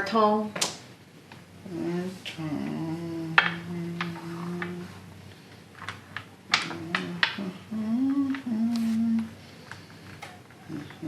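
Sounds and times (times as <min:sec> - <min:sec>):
person humming: 0:01.6 - 0:05.0, 0:06.6 - 0:09.4, 0:10.7 - 0:11.0.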